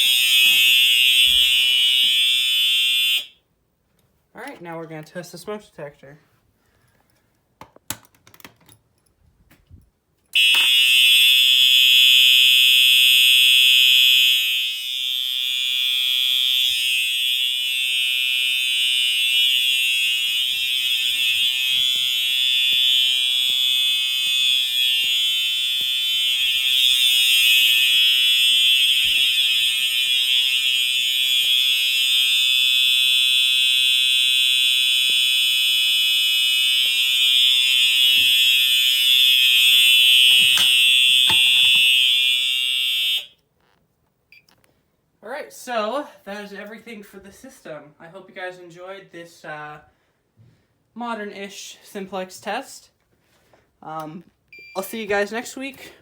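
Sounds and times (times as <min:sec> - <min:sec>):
fire alarm horn steady tone: 0:00.0 - 0:03.5, 0:10.4 - 0:43.8.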